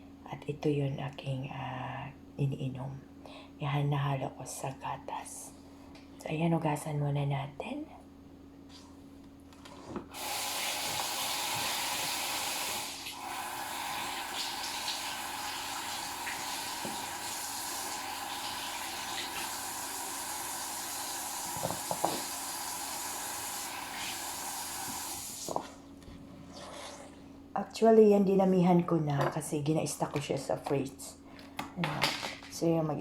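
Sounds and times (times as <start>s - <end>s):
tap water running into sink: 10.2s - 25.7s.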